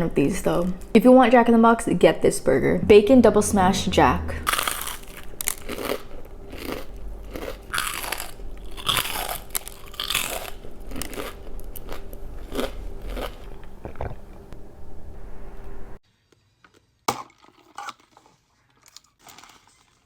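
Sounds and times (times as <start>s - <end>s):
crunchy food chewing: 4.5s - 14.6s, 16.7s - 20.0s.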